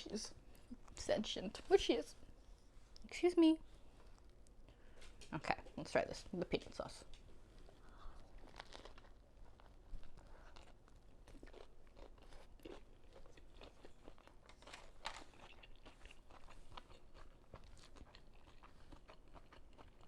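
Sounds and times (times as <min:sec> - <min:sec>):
faint chewing: 0:07.0 - 0:20.0.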